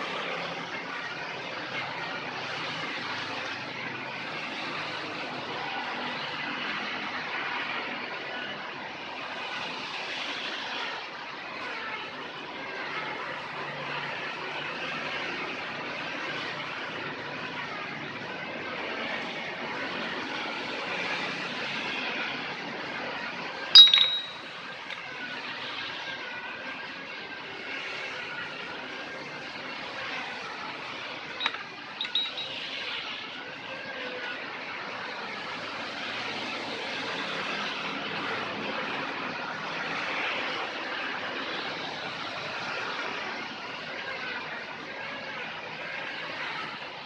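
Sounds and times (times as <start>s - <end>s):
sharp metallic clink: 23.8s - 24.5s, 31.4s - 32.6s.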